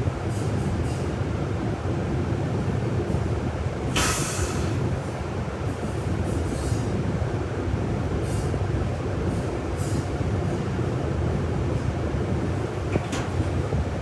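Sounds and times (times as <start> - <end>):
bus engine and road rumble: 0.0 - 14.0
air brake hiss: 3.9 - 4.9.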